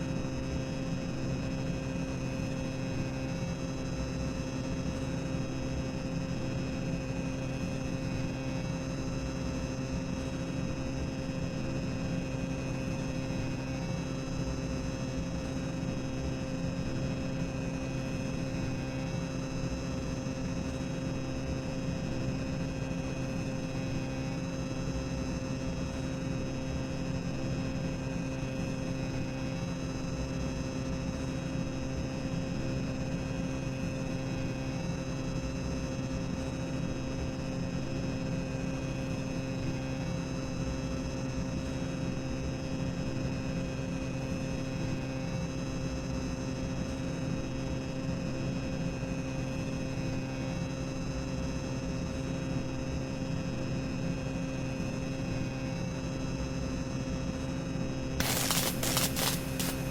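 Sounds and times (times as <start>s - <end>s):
electrical hum: 58.2s - 59.9s.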